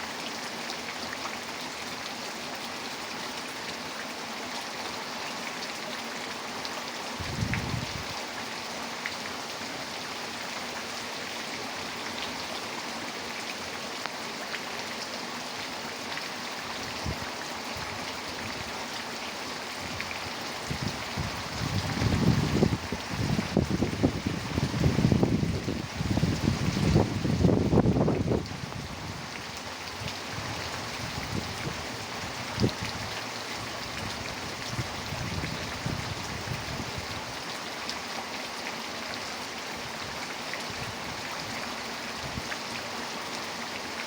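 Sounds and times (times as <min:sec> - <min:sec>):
heavy rain falling: 0:00.0 - 0:44.0
wind buffeting microphone: 0:07.2 - 0:08.2, 0:20.7 - 0:29.2, 0:34.0 - 0:37.2.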